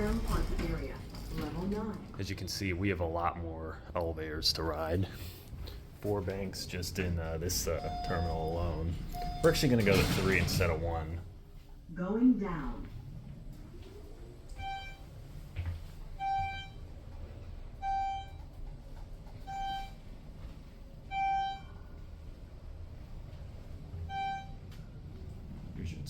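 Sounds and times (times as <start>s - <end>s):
elevator car hum: 0.0s - 26.0s
elevator chime beeps: 7.4s - 11.3s, 14.4s - 15.5s, 16.1s - 18.7s, 19.3s - 22.1s, 23.9s - 25.1s.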